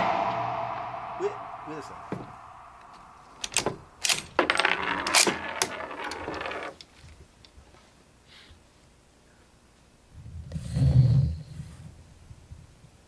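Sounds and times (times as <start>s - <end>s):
sharp knock: 0.0s - 3.8s.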